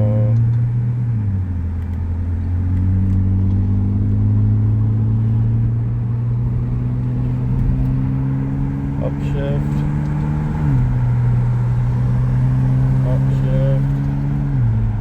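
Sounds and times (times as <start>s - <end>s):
car engine idling: 4.6s - 15.0s.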